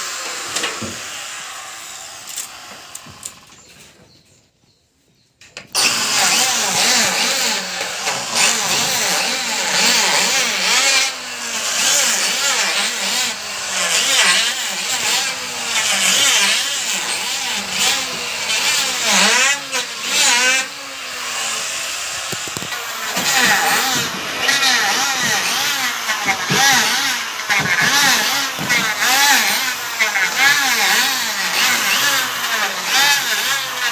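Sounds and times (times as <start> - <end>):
wood planing machine running: 0.0 - 3.7, 5.7 - 33.9.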